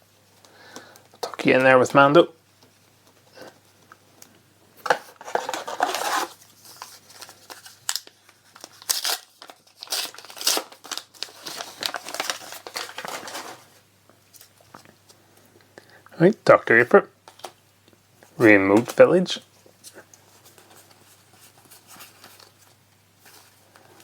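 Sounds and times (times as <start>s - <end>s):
foil wrapper crinkling: 5.2s - 14.9s.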